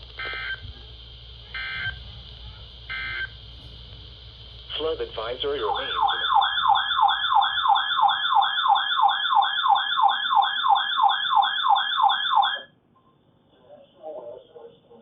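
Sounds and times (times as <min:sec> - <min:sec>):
warbling electronic alert siren: 0:01.5 - 0:02.0, 0:02.9 - 0:03.3, 0:05.7 - 0:12.7.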